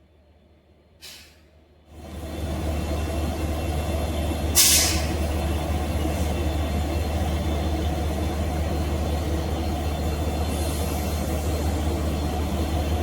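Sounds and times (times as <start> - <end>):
train low rumble: 0.0 - 13.0
air brakes hissing: 1.0 - 1.6, 4.5 - 5.3.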